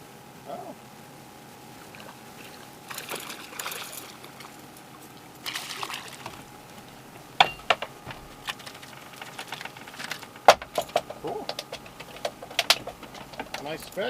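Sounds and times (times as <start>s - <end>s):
fish splashing in water: 1.6s - 13.8s
sharp knocks: 6.3s - 14.0s.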